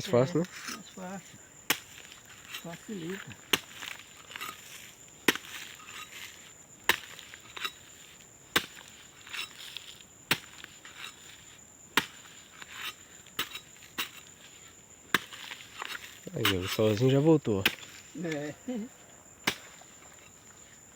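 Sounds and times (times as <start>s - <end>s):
soft scraping of loose earth: 0.0s - 20.9s
digging tool striking dry ground: 1.6s - 18.5s, 19.4s - 20.4s.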